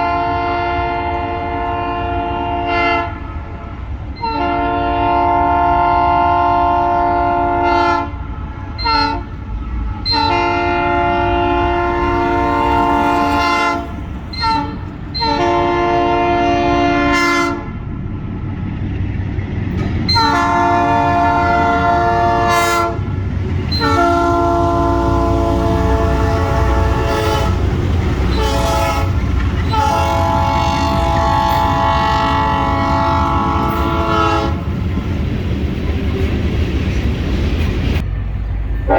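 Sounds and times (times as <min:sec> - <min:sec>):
locomotive air horn blasts: 0:00.0 - 0:08.2, 0:08.8 - 0:09.4, 0:10.0 - 0:17.8, 0:20.0 - 0:34.7
low rumble of passing train: 0:00.0 - 0:38.9.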